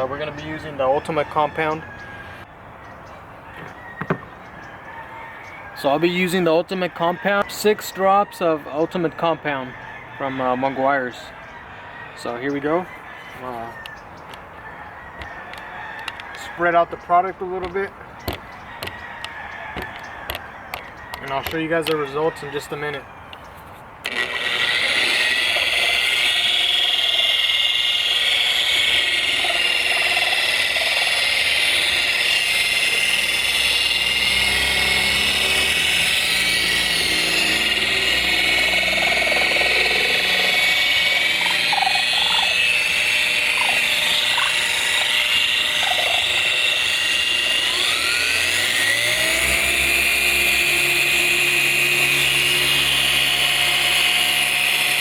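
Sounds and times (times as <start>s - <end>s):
electric car polisher whining: 24.0s - 55.0s.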